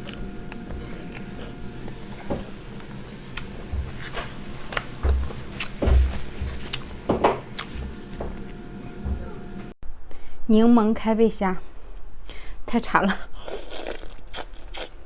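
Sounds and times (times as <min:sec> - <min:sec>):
person chewing and biting: 0:00.0 - 0:02.2, 0:02.8 - 0:05.8, 0:07.5 - 0:07.8, 0:13.5 - 0:15.0.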